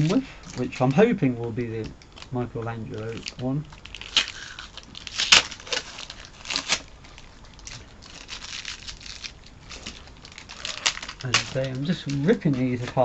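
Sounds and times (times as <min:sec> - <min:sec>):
paper rustling: 0:02.1 - 0:13.0
tape and paper ripping: 0:03.0 - 0:13.0.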